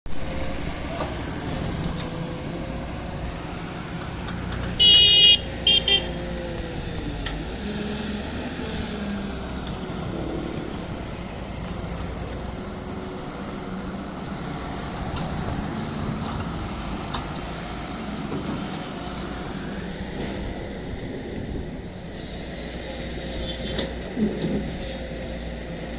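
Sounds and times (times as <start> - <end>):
heavy engine running: 0.1 - 25.9
vehicle horn blasts: 4.8 - 6.2.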